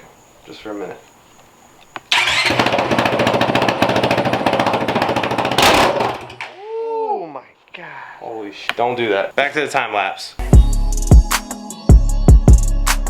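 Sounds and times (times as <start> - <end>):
motorcycle engine with open exhaust: 2.1 - 6.4.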